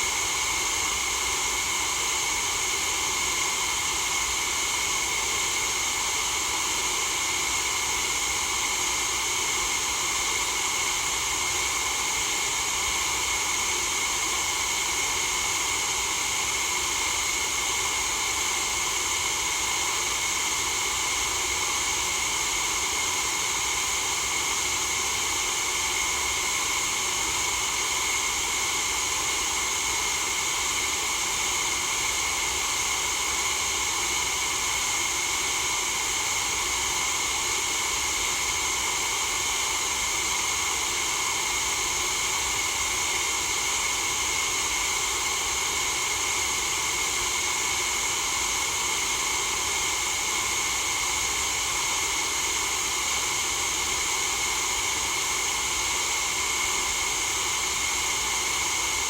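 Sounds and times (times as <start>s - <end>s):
white noise hiss: 0.0s - 3.8s.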